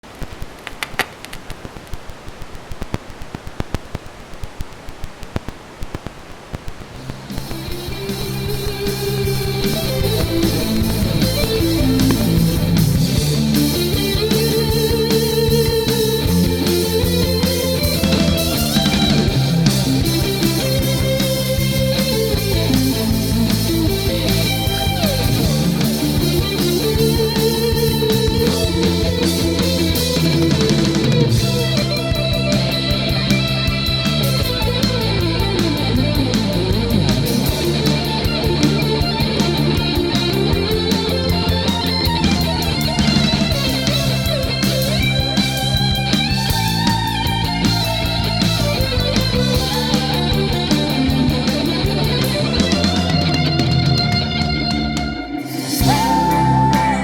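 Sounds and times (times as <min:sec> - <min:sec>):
steady hiss: 0:00.0 - 0:35.1
crackling clicks: 0:00.0 - 0:54.3
distorted electric guitar: 0:00.1 - 0:57.0
drums playing: 0:07.1 - 0:57.0
rock music: 0:07.1 - 0:57.0.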